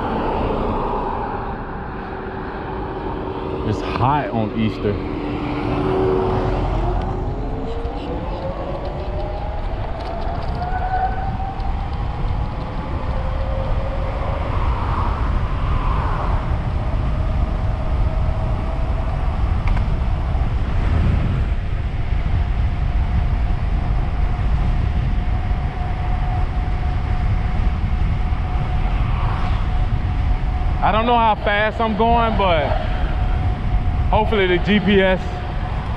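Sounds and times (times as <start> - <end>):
wind buffeting microphone: 0.0 - 35.9
electric motor whine: 5.1 - 14.6.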